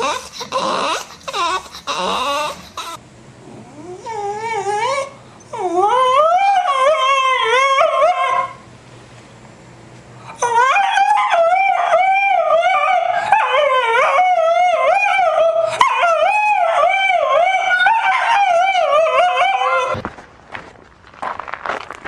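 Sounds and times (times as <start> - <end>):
dog howling: 0.0 - 3.0, 3.6 - 8.6, 10.3 - 20.1.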